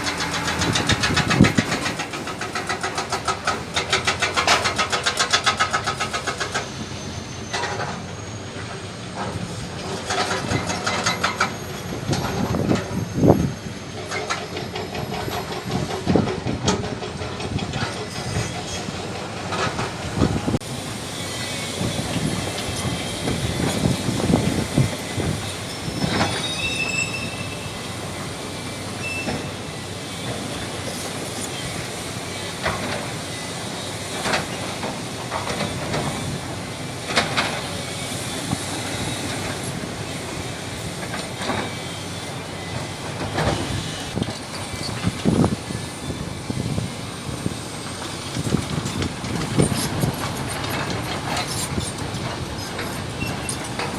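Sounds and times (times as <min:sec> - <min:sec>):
high metallic squeals: 0:00.0 - 0:04.6, 0:21.1 - 0:34.7, 0:37.6 - 0:53.9
metal clanks and knocks: 0:00.0 - 0:06.7
excavator engine under load: 0:00.0 - 0:26.8, 0:27.4 - 0:53.9.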